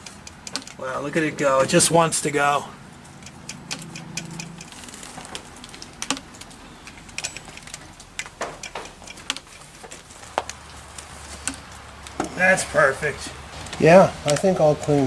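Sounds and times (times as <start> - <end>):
sewing machine mechanism clicking: 0.0 - 0.8, 3.2 - 9.6.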